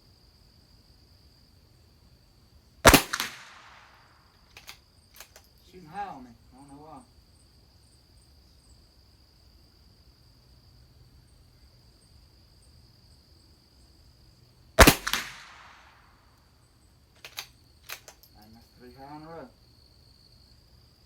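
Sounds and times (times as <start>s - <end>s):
high insect trill: 0.0s - 21.0s
rifle shot with echo: 2.9s - 4.1s, 14.8s - 16.0s.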